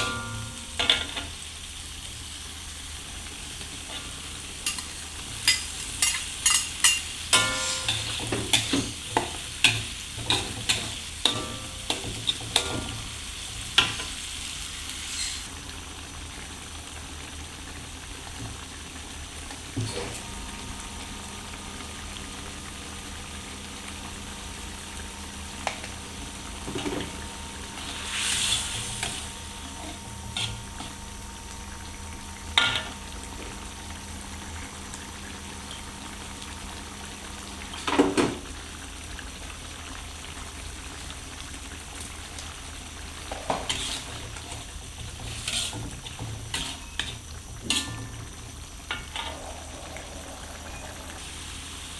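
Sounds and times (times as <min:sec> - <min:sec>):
food sizzling: 0:00.0 - 0:51.9
metal spatula scraping frying pan: 0:03.9 - 0:09.0, 0:27.8 - 0:30.9, 0:43.4 - 0:48.2.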